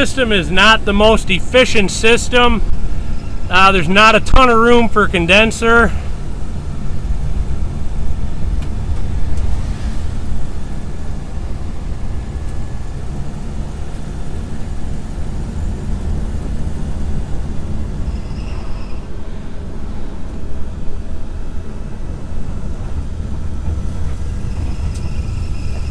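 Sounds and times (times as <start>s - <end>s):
car engine idling: 0.0s - 18.4s, 22.0s - 25.9s
air conditioning compressor running: 0.0s - 18.6s.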